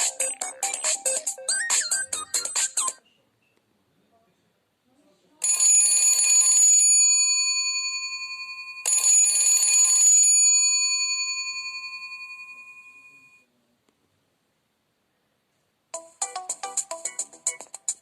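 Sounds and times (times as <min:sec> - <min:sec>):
bell-like phone ringtone: 0:00.0 - 0:03.0, 0:05.4 - 0:13.4.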